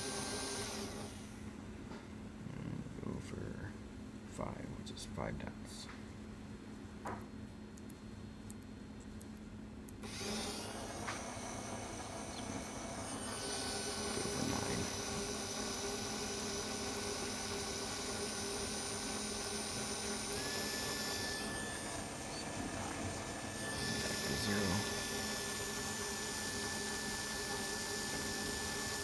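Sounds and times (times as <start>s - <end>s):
small electric motor whining: 0.0s - 1.4s, 10.0s - 29.0s.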